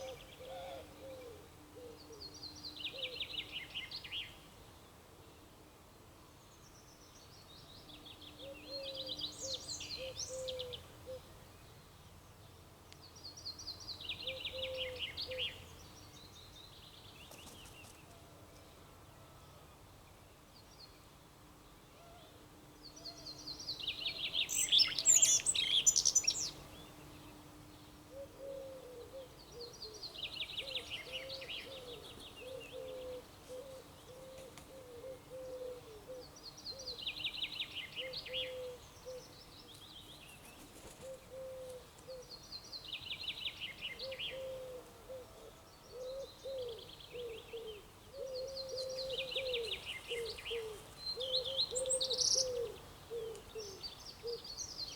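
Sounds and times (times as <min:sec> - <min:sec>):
lower repeated bird call: 0:08.5 - 0:11.3, 0:14.2 - 0:15.6, 0:28.1 - 0:39.4, 0:44.0 - 0:54.7.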